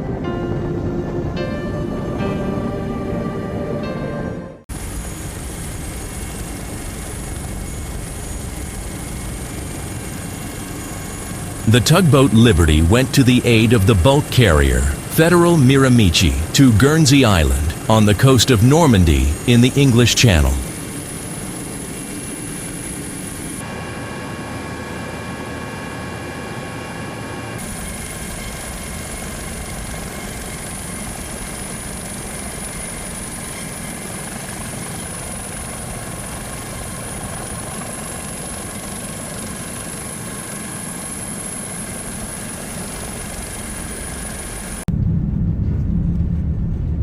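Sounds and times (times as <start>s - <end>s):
helicopter engine and rotor drone: 4.7s - 44.8s.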